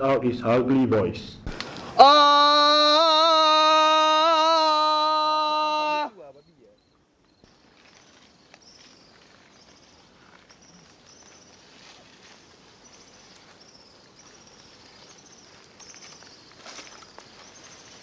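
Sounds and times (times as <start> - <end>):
high falling chirping calls: 2.0 - 18.0.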